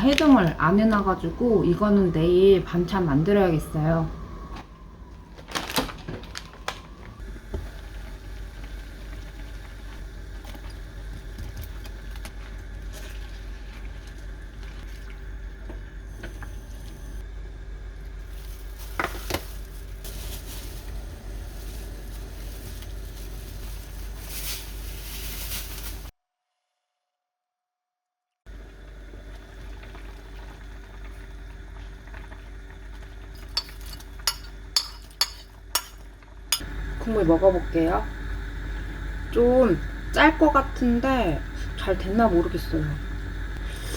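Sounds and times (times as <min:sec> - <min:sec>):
stew simmering in a pot: 0:06.4 - 0:18.2, 0:28.5 - 0:43.5
steady hum: 0:28.5 - 0:43.9.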